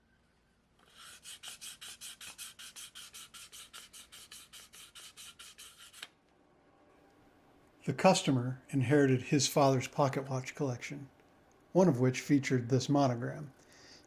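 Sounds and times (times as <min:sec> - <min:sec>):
scraping strokes on hard surface: 0:00.8 - 0:06.1.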